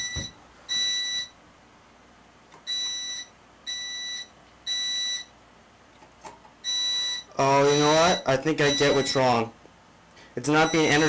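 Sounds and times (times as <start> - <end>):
fire alarm beeps: 0.0 - 1.4, 2.7 - 5.3, 6.6 - 9.4, 10.6 - 11.0.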